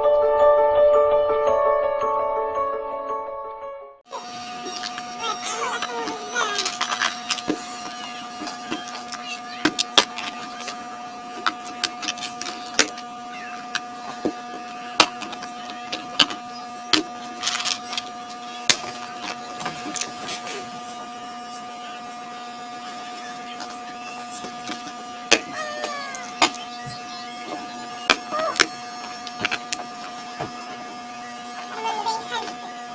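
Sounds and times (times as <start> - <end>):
electrical hum: 4.1 - 32.9
laptop parts clicking: 4.6 - 20.3.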